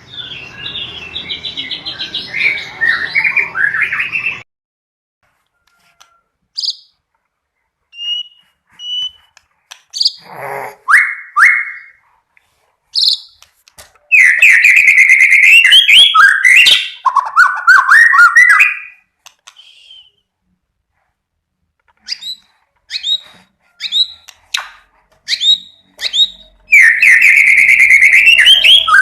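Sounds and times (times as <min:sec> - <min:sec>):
bird singing: 0:00.0 - 0:04.4, 0:06.5 - 0:07.0, 0:22.0 - 0:29.0.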